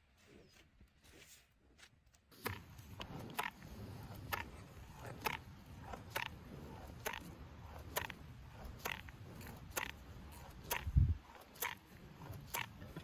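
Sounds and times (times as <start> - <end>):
cow tearing grass: 2.4 - 13.0
crunching while chewing: 2.4 - 13.0.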